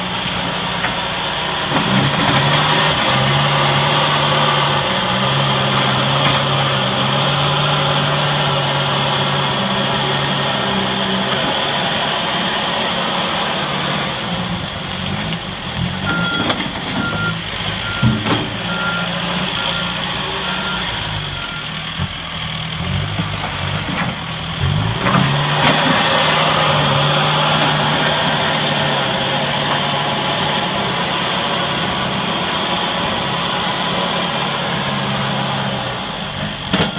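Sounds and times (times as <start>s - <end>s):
backhoe engine running: 0.0s - 36.9s
reversing alarm beeps: 16.1s - 21.7s.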